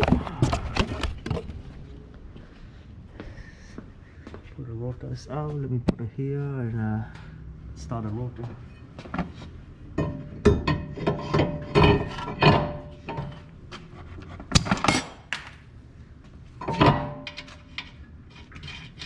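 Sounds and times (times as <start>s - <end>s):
metal brake rotors clanking: 9.9s - 13.5s, 16.6s - 17.9s.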